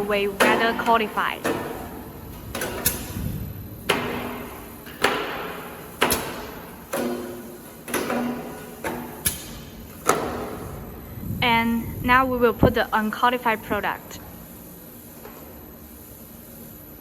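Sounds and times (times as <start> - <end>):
items clacking onto conveyor belt: 0.0 - 10.8.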